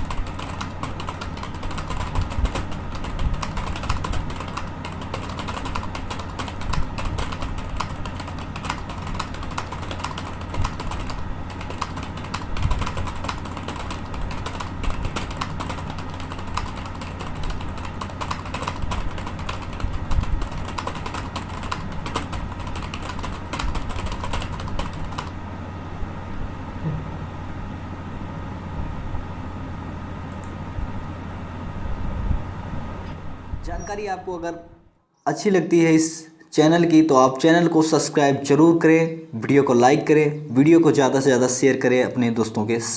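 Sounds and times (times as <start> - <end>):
fast typing on keyboard: 0.0 - 25.4
steady low hum: 0.0 - 42.9.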